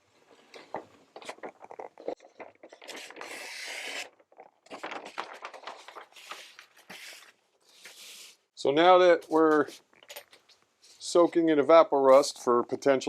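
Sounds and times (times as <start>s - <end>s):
metal parts clicking and clinking: 10.0s - 10.5s.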